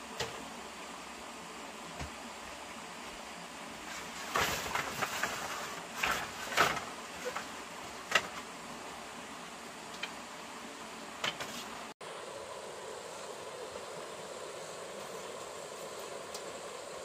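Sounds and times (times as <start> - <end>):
steady background hiss: 0.0 - 17.0
rustling: 3.8 - 8.5.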